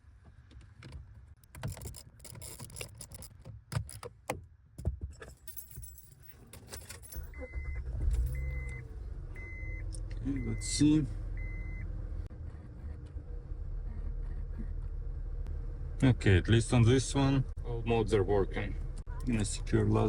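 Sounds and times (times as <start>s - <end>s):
keys jangling: 1.4s - 4.1s, 5.2s - 7.4s
car engine starting and running: 6.7s - 20.0s.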